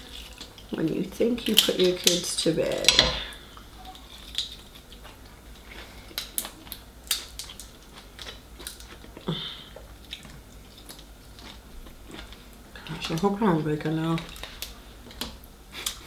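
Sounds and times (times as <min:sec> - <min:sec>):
chewing: 0:03.4 - 0:13.3.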